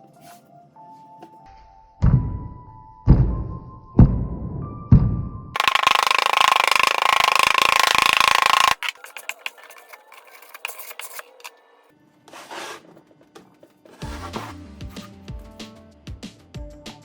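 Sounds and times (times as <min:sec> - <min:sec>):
music: 0:00.0 - 0:05.6, 0:11.4 - 0:17.0
power tool whine: 0:05.6 - 0:10.0.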